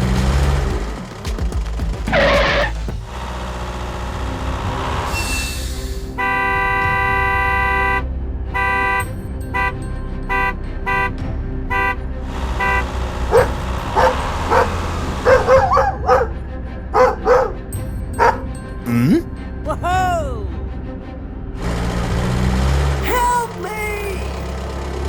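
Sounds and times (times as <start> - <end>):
vehicle horn blasts and toots: 6.2 - 12.0, 12.6 - 14.2
dog barking: 13.3 - 16.3.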